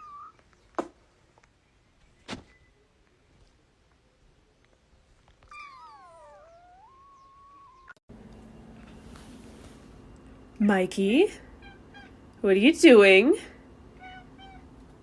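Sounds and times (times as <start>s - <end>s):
cat meowing: 0.0s - 0.4s, 5.4s - 8.0s, 14.0s - 14.7s.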